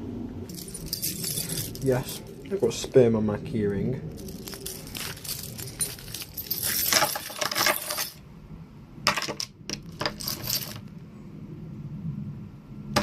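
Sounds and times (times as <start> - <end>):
keys jangling on keyring: 0.5 - 2.5, 4.2 - 8.2, 9.9 - 10.9.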